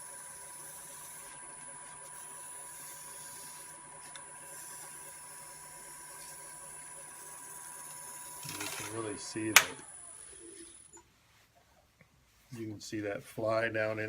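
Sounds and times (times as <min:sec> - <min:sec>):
sandpaper hissing on spinning wood: 0:00.0 - 0:09.5
wood lathe motor whine: 0:00.0 - 0:11.0.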